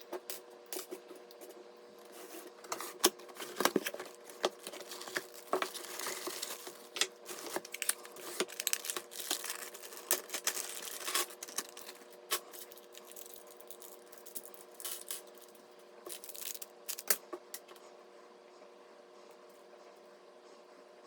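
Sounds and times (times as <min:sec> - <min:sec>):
faint steady hum: 0:00.0 - 0:21.0
hands handling parts and packaging: 0:02.1 - 0:17.7.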